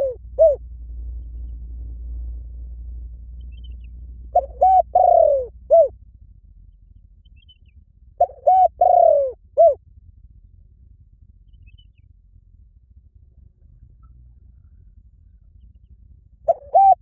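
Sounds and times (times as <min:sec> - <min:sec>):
dove cooing: 0:00.0 - 0:00.6, 0:04.3 - 0:05.9, 0:08.2 - 0:09.8, 0:16.4 - 0:17.0.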